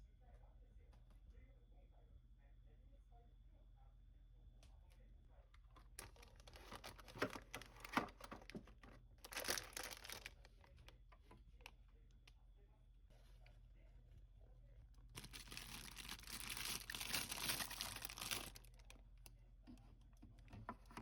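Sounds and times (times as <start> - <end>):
faint low hum: 0.0 - 21.0
wrapper crinkling and rustling: 5.8 - 10.7, 15.1 - 19.0.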